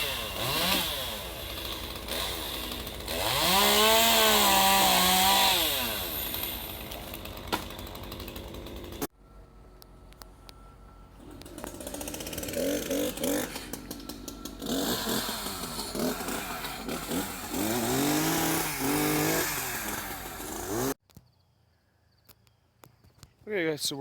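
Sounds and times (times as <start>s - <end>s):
chainsaw revving: 0.0s - 9.1s, 11.2s - 21.0s.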